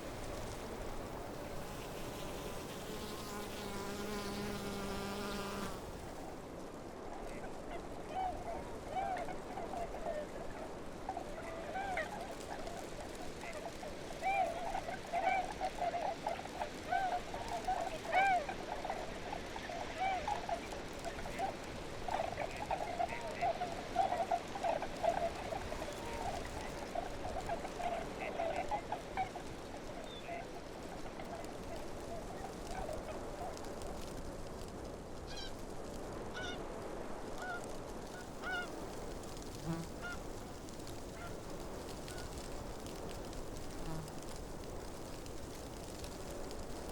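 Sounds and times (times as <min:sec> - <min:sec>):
steady background hiss: 0:00.0 - 0:46.9
geese honking: 0:39.6 - 0:40.3.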